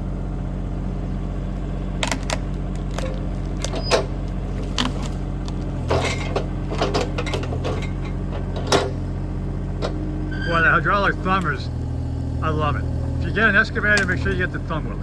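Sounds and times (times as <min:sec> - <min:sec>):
diesel engine running: 0:00.0 - 0:15.0
sharp clicks and knocks: 0:02.0 - 0:09.0.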